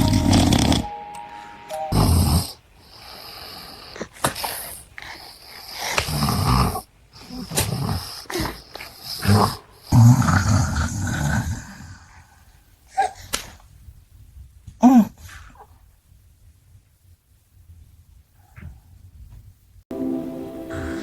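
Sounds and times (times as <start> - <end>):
man snoring loudly: 0.0 - 0.9.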